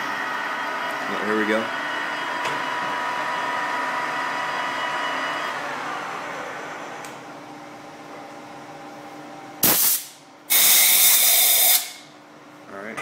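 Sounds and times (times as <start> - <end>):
metal lathe whining: 0.0 - 7.2
loud burst of hiss: 9.6 - 12.0.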